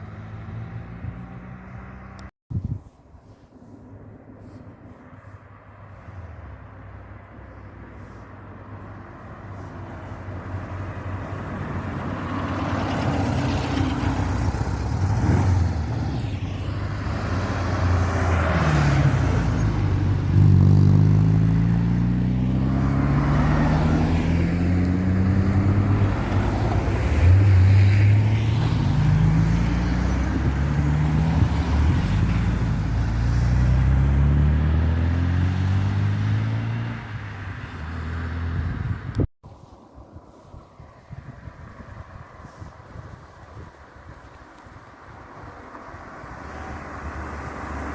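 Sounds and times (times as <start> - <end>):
rally cars passing: 0.0 - 2.3, 4.4 - 39.3, 40.2 - 47.9
tyre noise on road: 0.0 - 47.9
engines revving hard: 10.6 - 28.3, 28.9 - 38.9.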